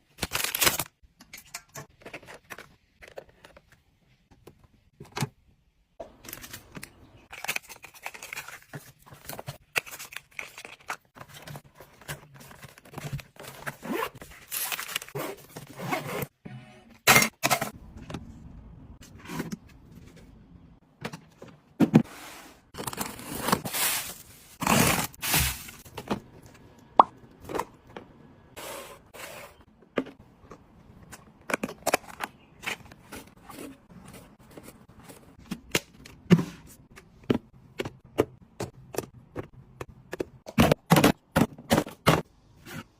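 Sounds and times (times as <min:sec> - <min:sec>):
packaging scraping and rustling: 0:06.3 - 0:16.2.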